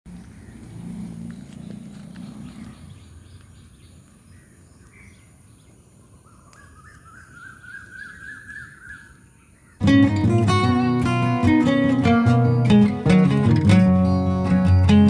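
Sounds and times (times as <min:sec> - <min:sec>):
bird calling: 0:00.1 - 0:09.9.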